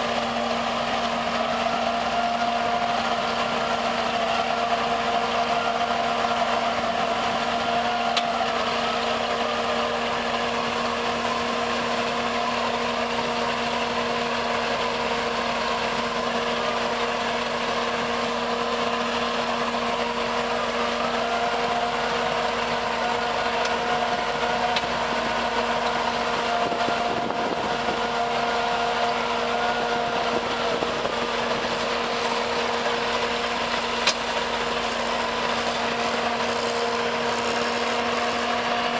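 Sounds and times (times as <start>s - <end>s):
constant whine: 0.0s - 38.9s
heavy machine engine running: 0.0s - 38.9s.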